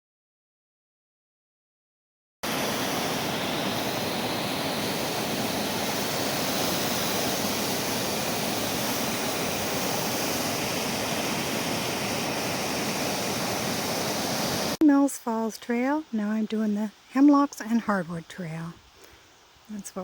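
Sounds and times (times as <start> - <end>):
waterfall roaring: 2.5 - 14.8.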